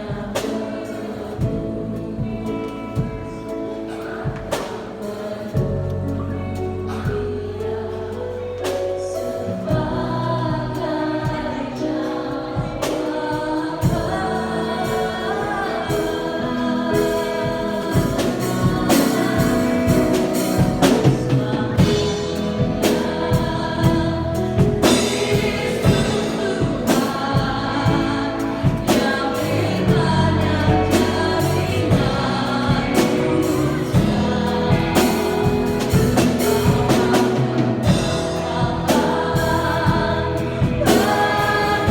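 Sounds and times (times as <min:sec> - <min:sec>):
choir singing gospel song: 0:00.0 - 0:41.9
steady percussion beat: 0:13.8 - 0:41.9.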